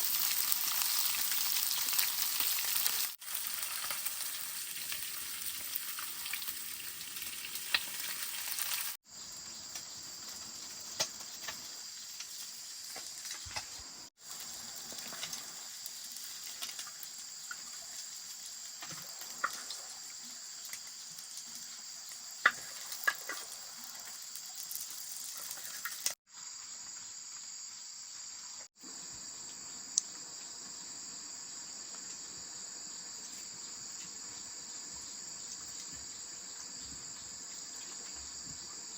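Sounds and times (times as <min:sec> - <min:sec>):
fish sizzling in a pan: 0:00.0 - 0:09.1, 0:09.8 - 0:26.2.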